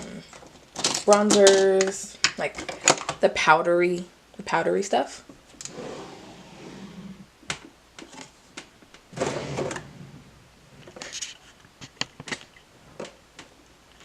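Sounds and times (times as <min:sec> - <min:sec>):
drawer sliding: 0:05.6 - 0:07.3, 0:09.1 - 0:10.4.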